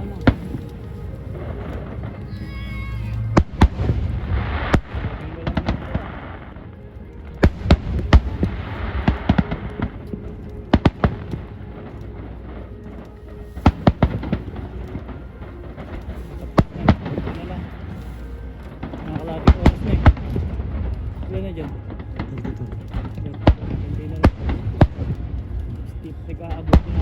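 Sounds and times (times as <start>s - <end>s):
fireworks bangs: 0.0s - 6.7s, 7.3s - 27.0s
fireworks crackling: 0.0s - 27.0s
low rumble: 0.0s - 27.0s.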